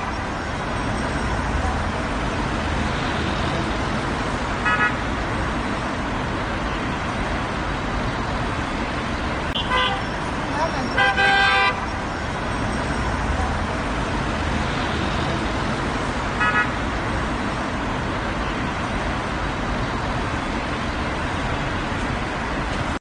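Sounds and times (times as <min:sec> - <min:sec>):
road traffic noise: 0:00.0 - 0:23.0
car horn honks: 0:04.6 - 0:05.0, 0:09.6 - 0:10.1, 0:10.8 - 0:11.9, 0:16.4 - 0:16.8.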